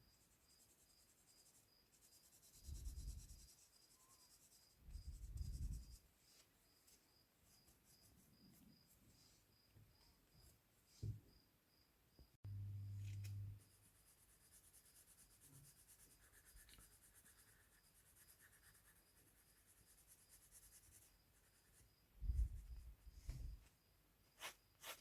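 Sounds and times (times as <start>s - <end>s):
pencil scratching on paper: 0.4s - 6.1s, 13.0s - 22.8s
low hum: 12.5s - 13.6s.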